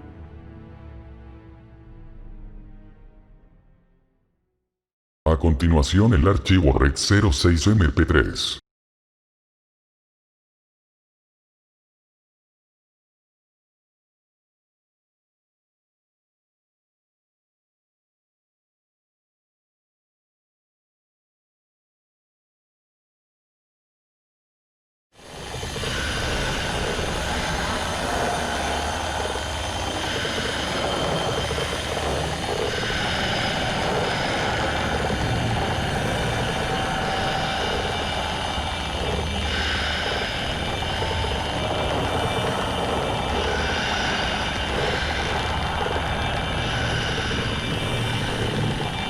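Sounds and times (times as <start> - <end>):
faint wavering tones: 25.5 - 49.0.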